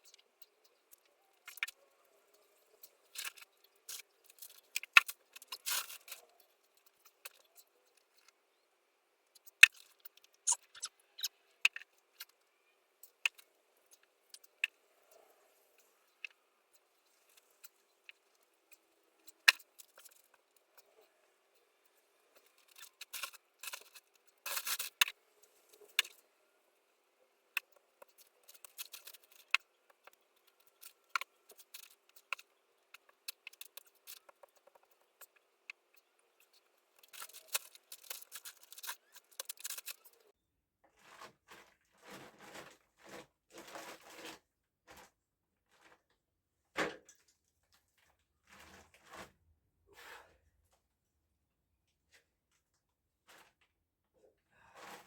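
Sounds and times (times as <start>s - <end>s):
tool scraping clay: 40.9s - 45.1s.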